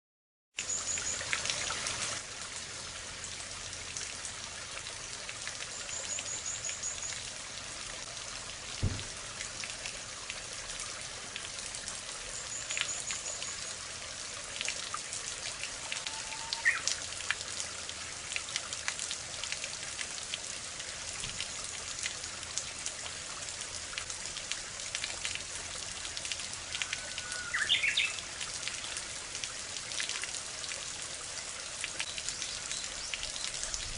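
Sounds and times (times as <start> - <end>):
water splashing from bamboo spout: 8.2 - 13.6
low thump: 8.8 - 9.2
low whistled bird calls: 16.0 - 16.9, 26.8 - 28.2.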